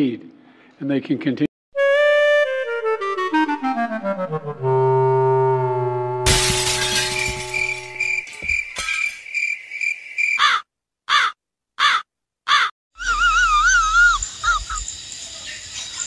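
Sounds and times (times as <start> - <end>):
loud warbling tone: 6.1 - 8.2
crow cawing: 10.4 - 12.7.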